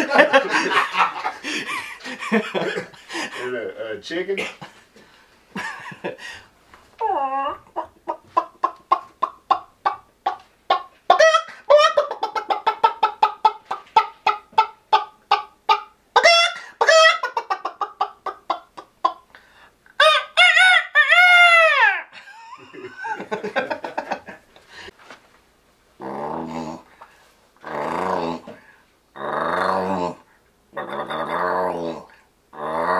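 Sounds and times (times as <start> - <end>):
man imitating chicken clucks: 7.0 - 19.3, 30.8 - 32.9.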